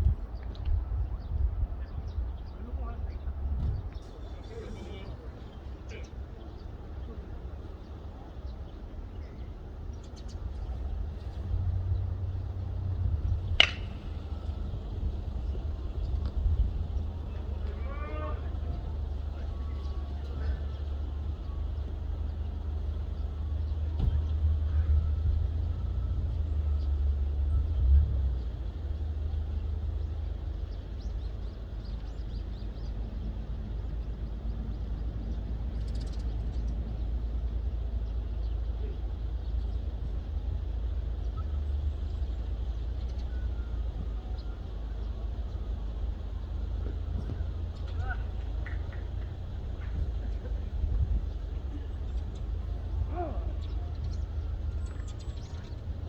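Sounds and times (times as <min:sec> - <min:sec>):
faint distant voices: 0:00.0 - 0:56.0
low outdoor rumble: 0:00.0 - 0:56.0
low rumble: 0:06.7 - 0:29.8.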